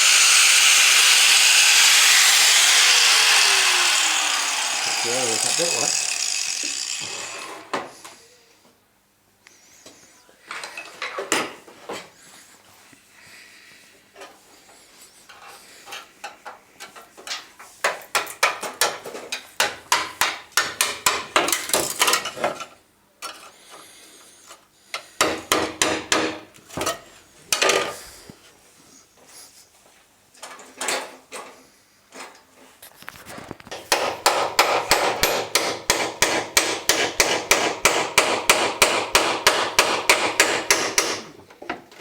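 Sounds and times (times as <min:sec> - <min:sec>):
hammer striking sheet steel: 0:33.9 - 0:41.3.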